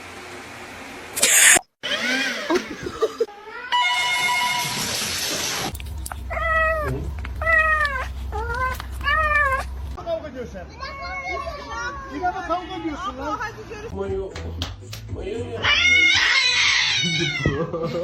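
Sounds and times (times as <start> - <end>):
cats meowing: 5.8 - 9.9, 15.6 - 17.7.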